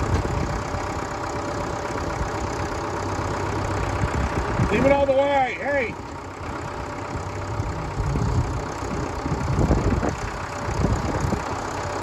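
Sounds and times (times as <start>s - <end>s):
heavy mechanical knocks: 0.0s - 0.8s
diesel engine rumbling: 0.0s - 12.0s.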